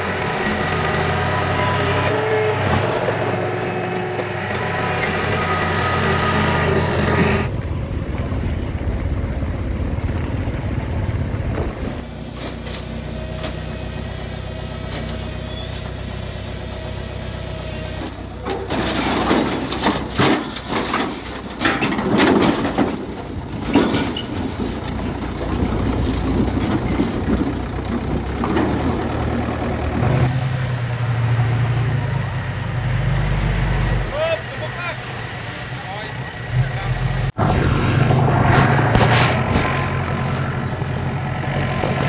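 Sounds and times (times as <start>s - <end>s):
heavy diesel engine running: 0.0s - 42.0s
clattering and knocking: 18.1s - 30.3s.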